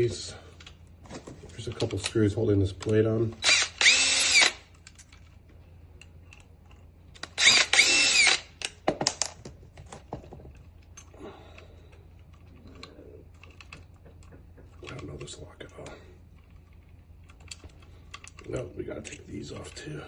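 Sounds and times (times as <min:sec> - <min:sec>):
power drill motor whine: 0:03.4 - 0:04.7, 0:07.2 - 0:08.6.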